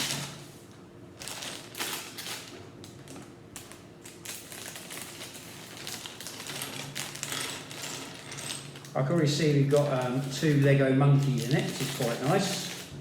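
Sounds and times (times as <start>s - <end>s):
plastic bags crinkling: 1.2s - 13.0s.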